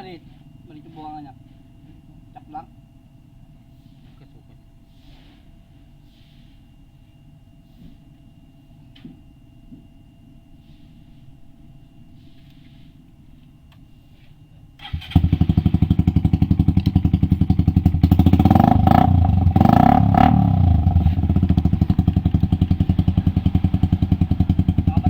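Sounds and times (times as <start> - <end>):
motorcycle engine idling and revving: 14.8 - 25.0.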